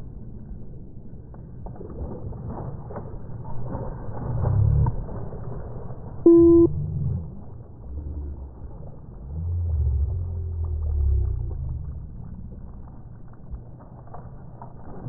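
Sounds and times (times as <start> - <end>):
short loud beep: 6.3 - 6.7.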